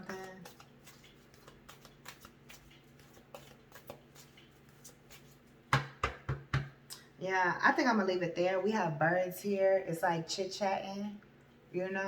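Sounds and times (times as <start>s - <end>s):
cards being shuffled: 0.1s - 5.6s.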